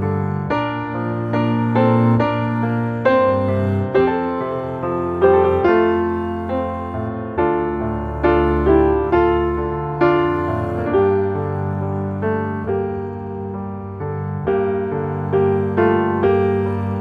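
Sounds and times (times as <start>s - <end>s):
slow piano chords: 0.0s - 17.0s.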